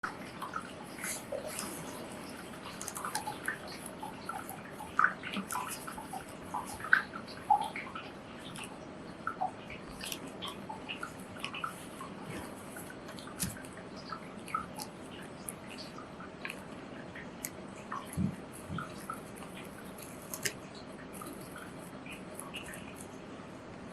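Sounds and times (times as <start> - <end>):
scissors snipping paper: 2.6 - 4.4, 9.8 - 23.1.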